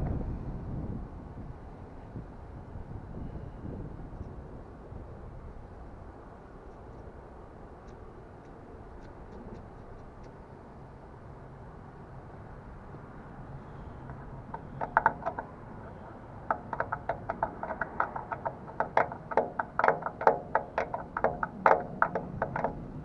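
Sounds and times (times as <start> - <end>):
low steady rumble: 0.0 - 23.0
hand tool scraping and clicking: 14.1 - 22.8.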